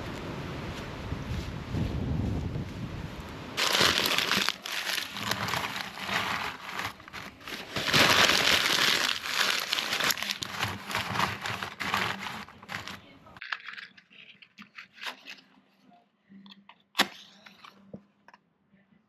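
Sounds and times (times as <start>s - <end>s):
crinkling and rustling: 3.6s - 15.5s.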